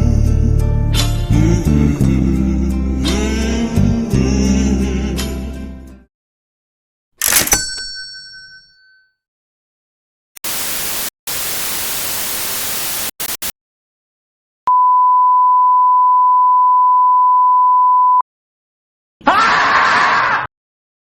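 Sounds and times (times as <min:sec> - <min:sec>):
tv static hissing: 0:10.4 - 0:13.5
censor beep: 0:14.7 - 0:18.2
person screaming: 0:19.2 - 0:20.5.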